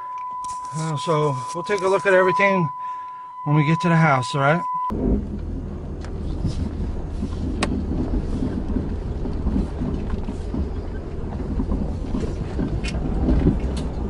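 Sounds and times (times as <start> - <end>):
car engine running: 4.9 - 14.0.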